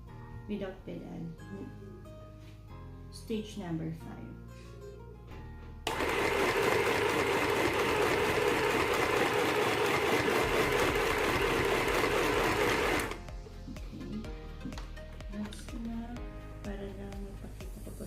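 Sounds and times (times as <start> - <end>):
sewing machine running: 5.9 - 13.2.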